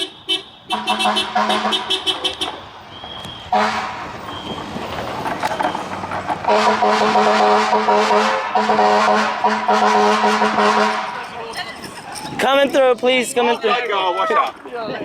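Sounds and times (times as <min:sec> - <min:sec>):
air horn chord blasts: 0:00.7 - 0:02.5, 0:03.5 - 0:04.0, 0:06.5 - 0:11.2.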